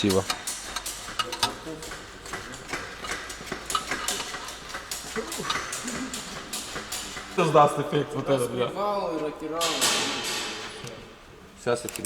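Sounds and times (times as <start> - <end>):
metallic clicks of engine parts: 0.0 - 7.6.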